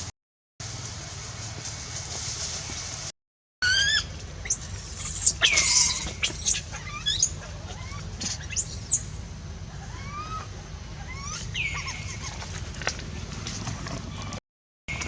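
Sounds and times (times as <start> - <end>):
young monkey screaming: 3.6 - 9.1, 9.7 - 12.5.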